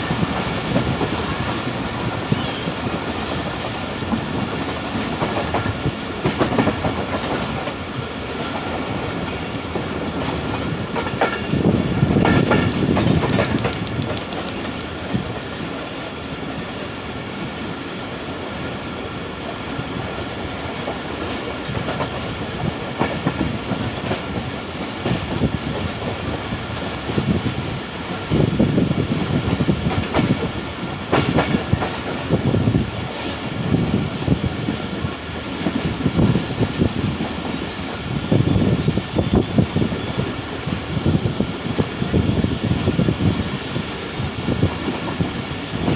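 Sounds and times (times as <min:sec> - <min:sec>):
wheels clickety-clack over rail joints: 0:00.0 - 0:16.7, 0:18.6 - 0:45.9
train wheels rumbling: 0:00.0 - 0:45.9.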